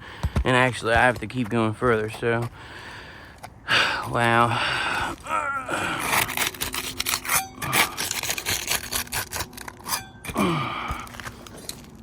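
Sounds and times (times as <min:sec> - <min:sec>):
metal tool scraping and tapping shingles: 0:06.0 - 0:10.4.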